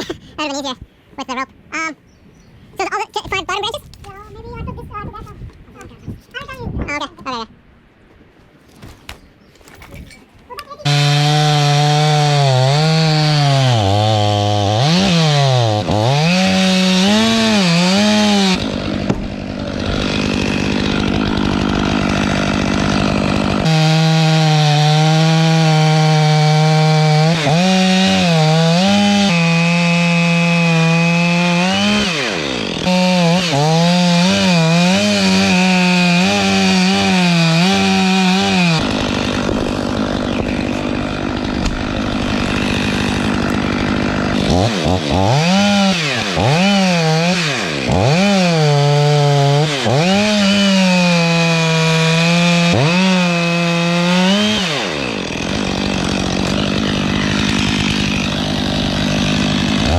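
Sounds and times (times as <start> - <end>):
chainsaw cutting wood: 10.7 - 59.9.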